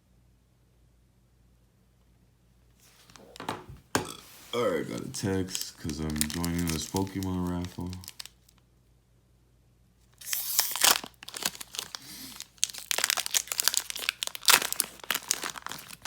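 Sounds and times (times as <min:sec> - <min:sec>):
foil wrapper tearing and crinkling: 0:04.4 - 0:08.5, 0:10.2 - 0:16.0.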